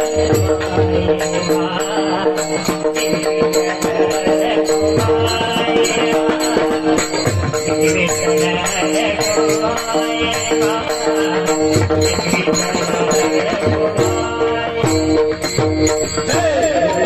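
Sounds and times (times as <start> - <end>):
metallic jingling beat: 0.0 - 17.0.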